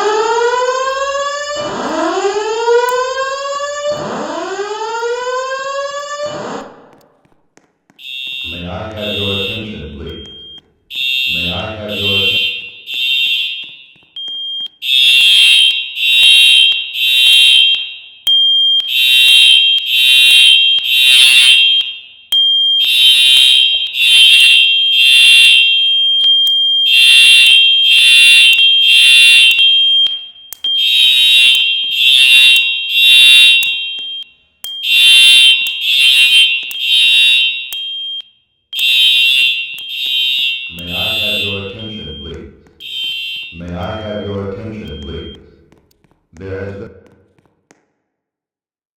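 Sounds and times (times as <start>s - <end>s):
fire alarm shrill beeps: 8.0s - 45.6s.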